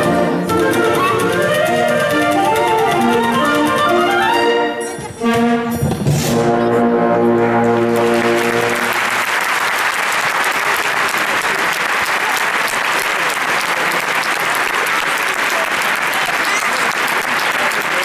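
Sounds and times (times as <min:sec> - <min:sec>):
audience applauding: 0:07.7 - 0:18.0.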